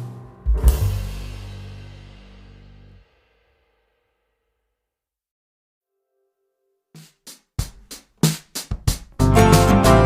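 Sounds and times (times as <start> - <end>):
background music: 0.0 - 2.9, 9.0 - 10.0
drum hits: 0.4 - 2.8, 7.0 - 9.8.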